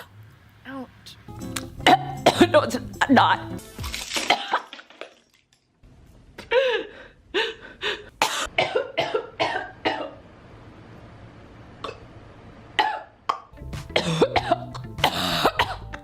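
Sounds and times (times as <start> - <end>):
woman coughing: 1.8 - 2.8, 4.2 - 4.7, 8.2 - 10.2, 14.0 - 15.9.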